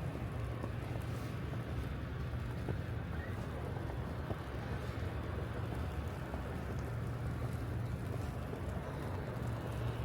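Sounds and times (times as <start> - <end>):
snowstorm rumble and hiss: 0.0 - 10.0.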